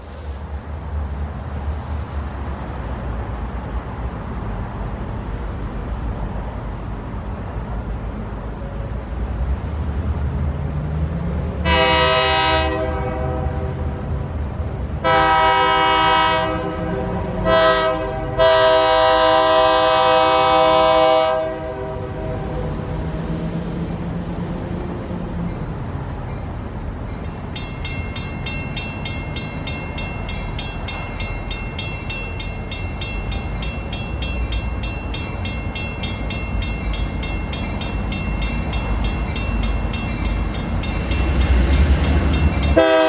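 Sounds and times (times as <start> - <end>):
locomotive rumble: 0.0 - 43.0
locomotive air horn blasts: 11.6 - 13.9, 15.0 - 22.4, 42.8 - 43.0.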